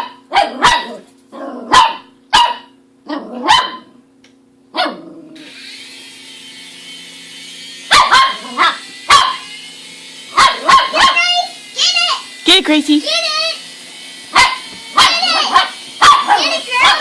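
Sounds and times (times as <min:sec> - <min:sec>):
dog barking: 0:00.0 - 0:04.0, 0:04.7 - 0:05.0, 0:07.9 - 0:09.5, 0:10.3 - 0:11.3, 0:14.3 - 0:17.0.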